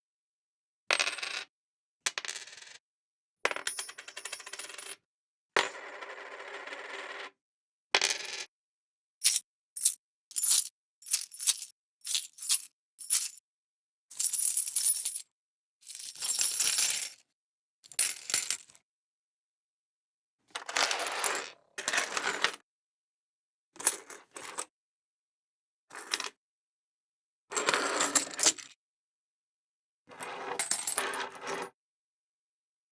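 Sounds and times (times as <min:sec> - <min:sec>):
coins clinking: 0:09.2 - 0:13.4
coins jingling together: 0:09.2 - 0:13.4, 0:14.1 - 0:15.2.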